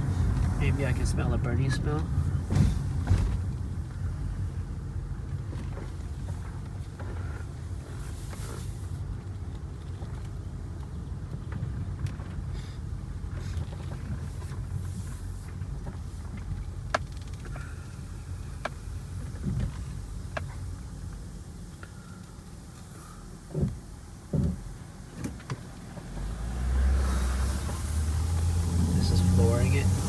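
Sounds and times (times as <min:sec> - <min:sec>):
engine and road rumble: 0:00.0 - 0:30.0.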